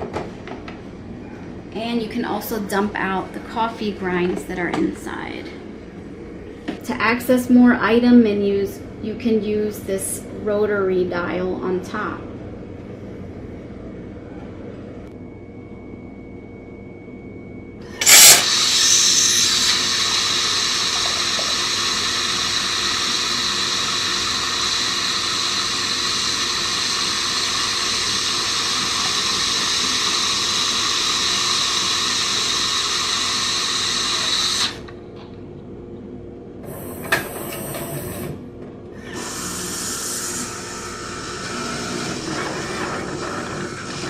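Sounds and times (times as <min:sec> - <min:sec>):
espresso machine hissing: 0:17.9 - 0:34.9, 0:36.6 - 0:44.0.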